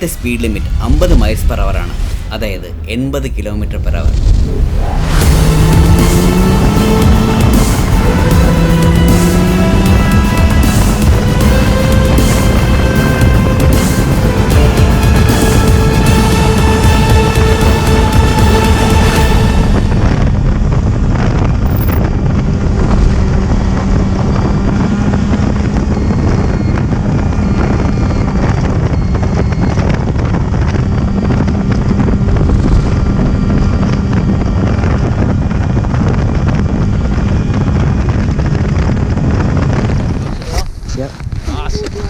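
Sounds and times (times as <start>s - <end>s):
snowmobile engine droning: 3.2s - 42.0s
wind buffeting microphone: 19.2s - 42.0s.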